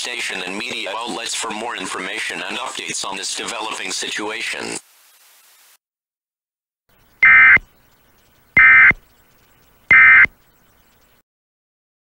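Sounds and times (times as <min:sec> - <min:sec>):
digital data bursts: 0:07.2 - 0:07.7, 0:08.6 - 0:09.1, 0:09.9 - 0:10.4.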